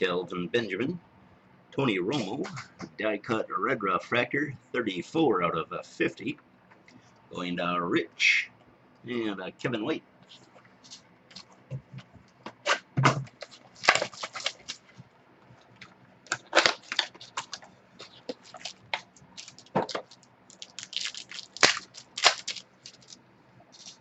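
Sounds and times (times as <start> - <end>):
card packs being opened: 12.6 - 15.0, 15.8 - 23.2, 23.8 - 24.0.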